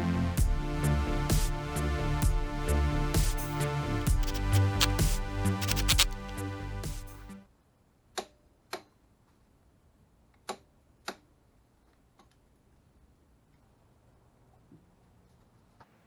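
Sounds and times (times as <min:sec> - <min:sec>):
torque wrench clicks: 0:05.6 - 0:06.3.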